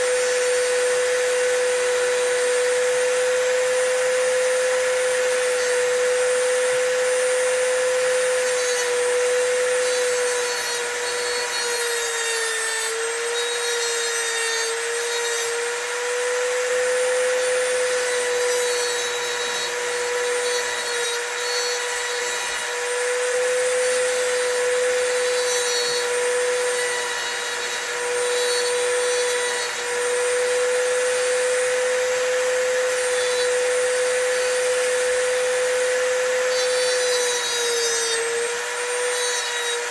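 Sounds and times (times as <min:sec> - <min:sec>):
rotary tool grinding metal: 0:00.0 - 0:39.9.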